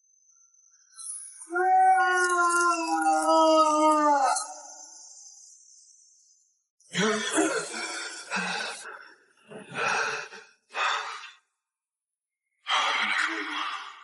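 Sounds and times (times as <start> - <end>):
person breathing hard: 7.7 - 11.4.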